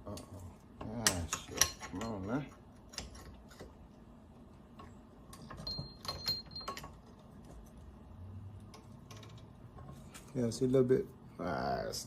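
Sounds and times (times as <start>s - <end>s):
metal parts clinking: 5.3s - 7.1s.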